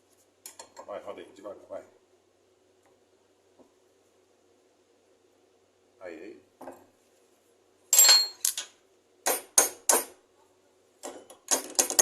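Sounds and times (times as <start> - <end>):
metal tools clanking: 7.9 - 8.7.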